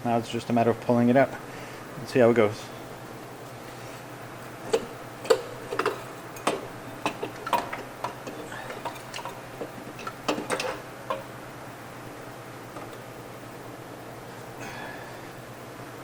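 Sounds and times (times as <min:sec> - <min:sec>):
metal clanks and knocks: 0:04.7 - 0:11.3.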